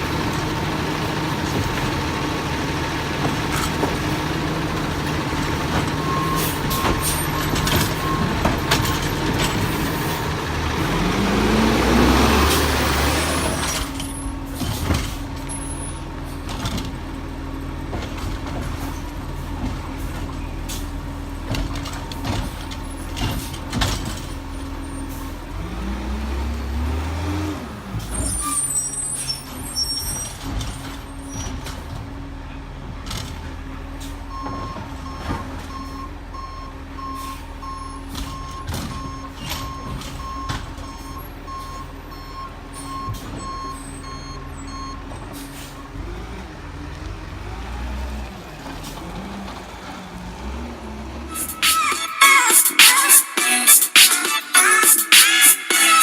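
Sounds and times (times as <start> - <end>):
diesel engine revving: 0.0 - 56.0
air brake hisses: 37.2 - 37.5.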